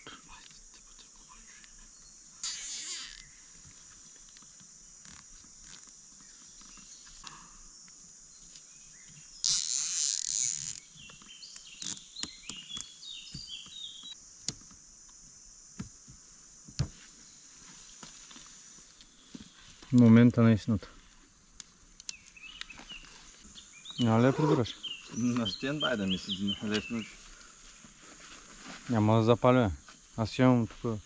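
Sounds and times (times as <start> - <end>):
high-pitched insect chirring: 0.0 - 15.8.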